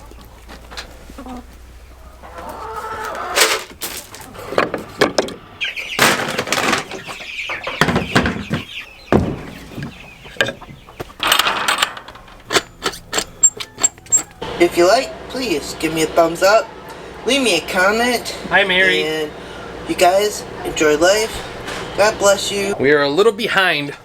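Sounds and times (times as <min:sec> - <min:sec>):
rustling: 0:00.0 - 0:14.4
chickens clucking and squawking: 0:00.0 - 0:24.0
sharp knocks: 0:04.5 - 0:14.4.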